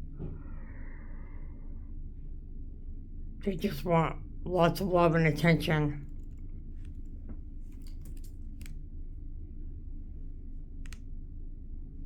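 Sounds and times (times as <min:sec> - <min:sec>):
low room hum: 0:00.0 - 0:12.0
faint light clicks: 0:10.8 - 0:11.1.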